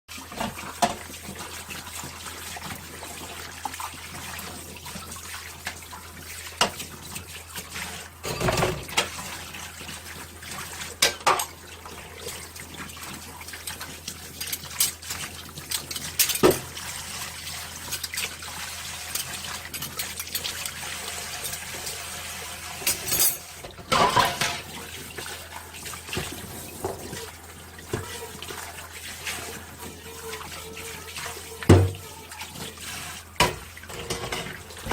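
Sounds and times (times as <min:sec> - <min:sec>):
tap water running: 0:00.1 - 0:34.9
dishes clinking: 0:08.2 - 0:09.1, 0:22.8 - 0:24.7.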